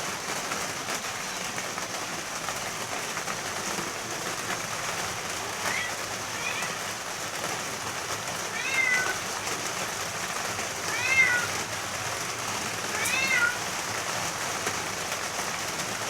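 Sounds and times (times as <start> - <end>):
steady rain: 0.0 - 16.0
cat meowing: 5.6 - 6.9, 8.5 - 9.6, 10.8 - 11.7, 12.7 - 13.7.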